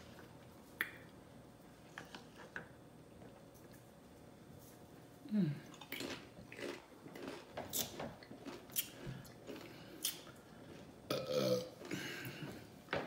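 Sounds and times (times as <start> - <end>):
person burping: 11.1 - 12.3.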